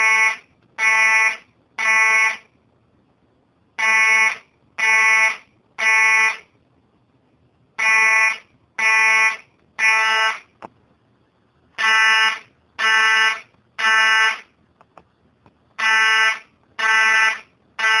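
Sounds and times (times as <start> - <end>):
fire alarm beeping: 0.0 - 2.5, 3.8 - 6.4, 7.8 - 10.5, 11.8 - 14.5, 15.8 - 18.0.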